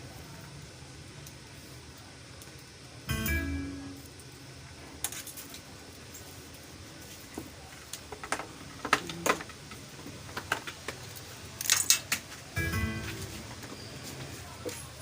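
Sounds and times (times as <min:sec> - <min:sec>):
small hard objects clicking: 0:07.9 - 0:12.4.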